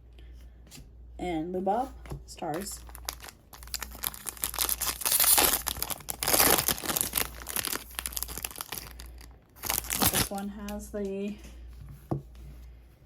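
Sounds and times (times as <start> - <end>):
plastic wrapper crinkling and tearing: 2.8 - 10.5.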